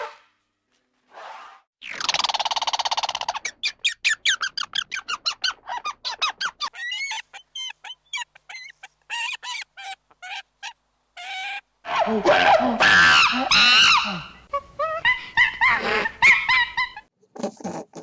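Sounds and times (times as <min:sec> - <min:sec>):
birds calling: 0:11.9 - 0:17.1.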